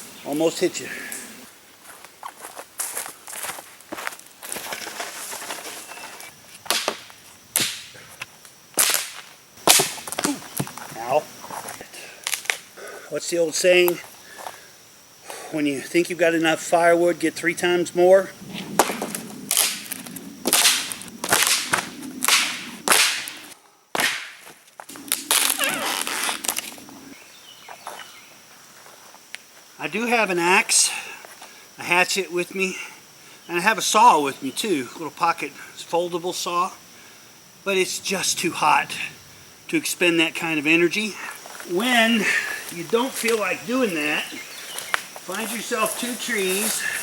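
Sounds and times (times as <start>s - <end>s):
branches snapping: 6.6s - 8.0s, 8.8s - 10.9s, 12.2s - 12.6s, 18.8s - 26.8s
dry wood crunching: 18.8s - 23.2s, 24.0s - 26.8s, 42.6s - 43.9s.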